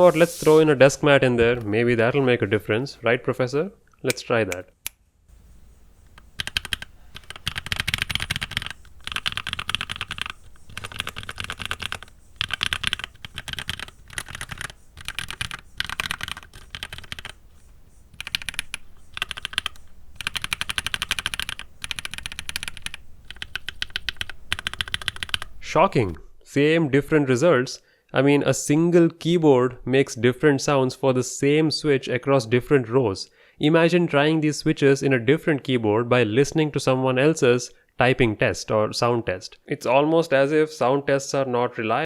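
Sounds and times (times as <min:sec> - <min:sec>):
mechanical keyboard keystroke clacks: 0:06.2 - 0:17.4, 0:18.2 - 0:25.5.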